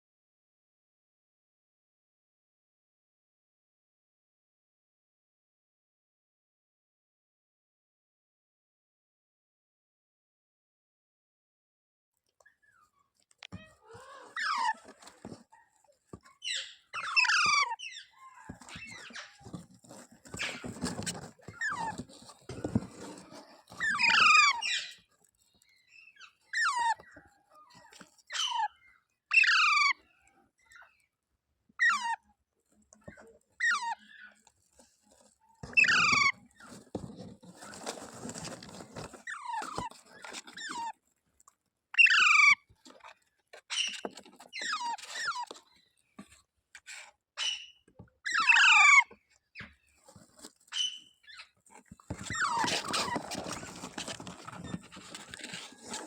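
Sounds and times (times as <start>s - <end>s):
rustling: 13.2s - 28.6s, 32.6s - 47.1s, 49.8s - 56.0s
parrot screeching: 13.8s - 14.9s, 16.4s - 19.3s, 23.7s - 25.0s, 29.3s - 30.0s, 48.3s - 49.1s.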